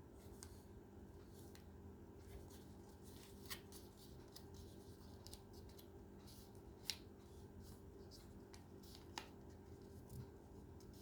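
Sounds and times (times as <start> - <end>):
paper being folded and creased: 2.2 - 11.0.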